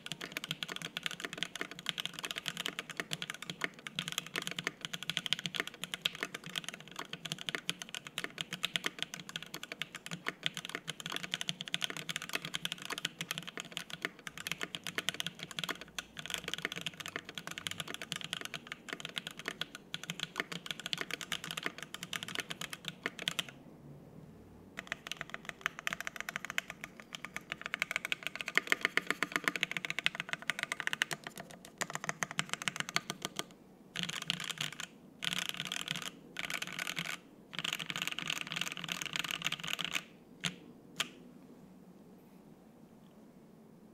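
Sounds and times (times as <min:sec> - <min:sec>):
mechanical keyboard key clacks: 0:00.0 - 0:23.5.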